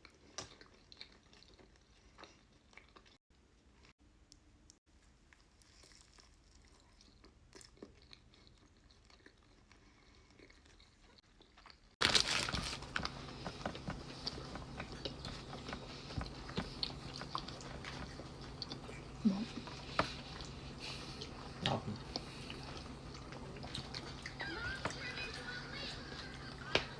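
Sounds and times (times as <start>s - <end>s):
person chewing and biting food: 5.3s - 24.6s.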